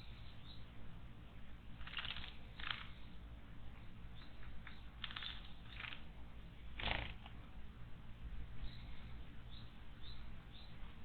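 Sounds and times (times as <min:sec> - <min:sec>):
low background rumble: 0:00.0 - 0:11.0.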